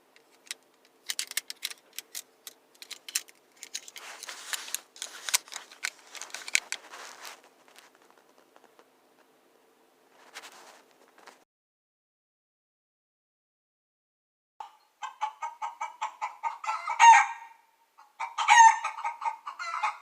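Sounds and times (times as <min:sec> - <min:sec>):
rustling: 0:00.0 - 0:09.3, 0:10.1 - 0:11.4
metal clicks and snaps: 0:00.2 - 0:04.0.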